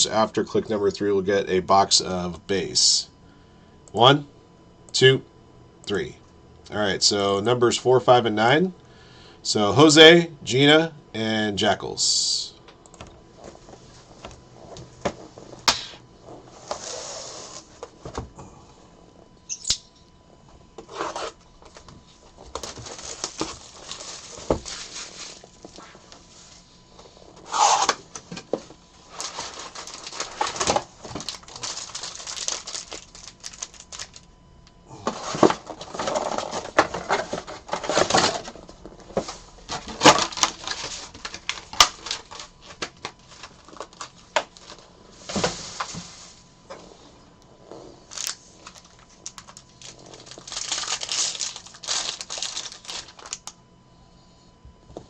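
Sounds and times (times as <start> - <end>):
packaging crinkling and tearing: 22.4 - 25.7, 29.1 - 34.3, 39.7 - 44.9, 48.1 - 53.6.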